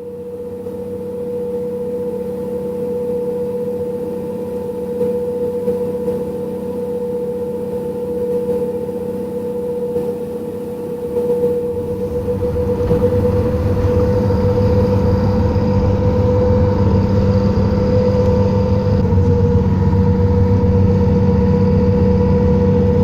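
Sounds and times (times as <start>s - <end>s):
bus engine humming: 11.6s - 23.0s.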